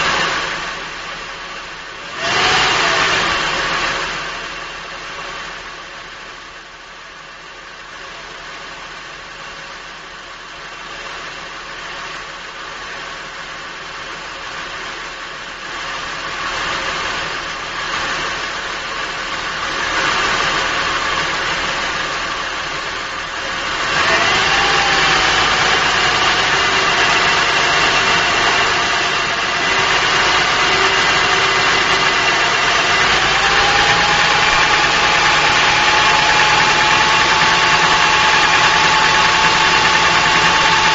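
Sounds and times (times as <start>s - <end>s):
car engine idling: 0.0s - 40.9s
steady whine: 0.0s - 40.9s
short rising tone: 23.8s - 40.9s.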